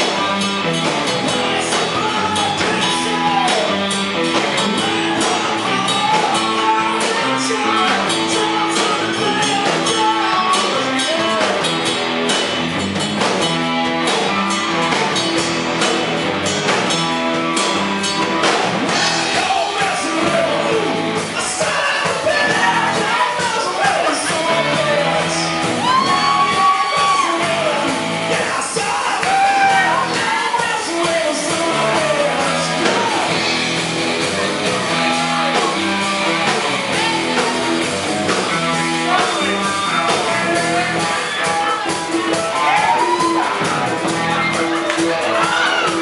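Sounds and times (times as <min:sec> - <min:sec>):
rock band playing live: 0:00.0 - 0:46.0
singer shouting vocals: 0:01.3 - 0:11.8, 0:18.9 - 0:33.5, 0:38.6 - 0:46.0.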